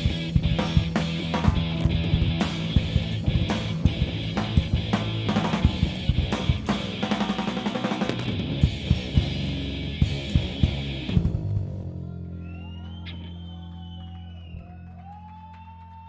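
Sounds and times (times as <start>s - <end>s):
punk rock band playing: 0.0s - 11.9s
bass drum and snare hits: 0.0s - 12.0s.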